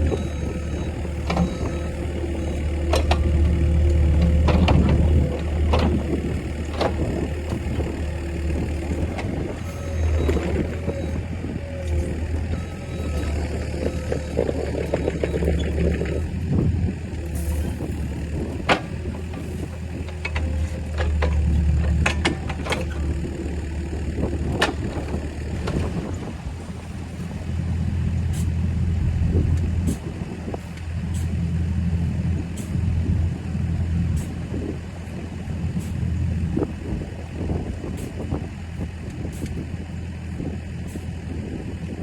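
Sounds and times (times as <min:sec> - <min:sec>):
engine droning: 0:00.0 - 0:42.0
metallic clicks and knocks: 0:18.6 - 0:23.0.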